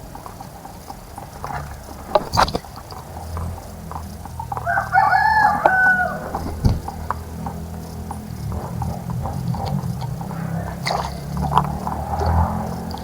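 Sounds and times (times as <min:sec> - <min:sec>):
steady low hum: 0:00.0 - 0:13.0
rooster crowing: 0:04.4 - 0:07.4.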